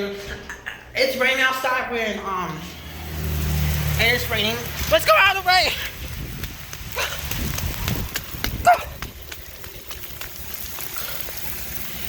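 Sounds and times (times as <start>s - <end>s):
rain falling: 2.7s - 12.0s
raindrops tapping near microphone: 2.8s - 12.0s.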